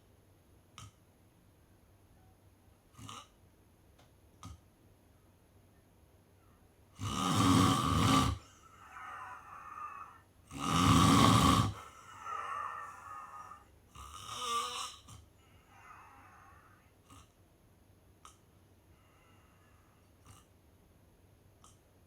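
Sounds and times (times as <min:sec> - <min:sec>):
quiet breathing: 0:06.4 - 0:17.5, 0:18.2 - 0:20.7
person snoring: 0:07.0 - 0:17.3.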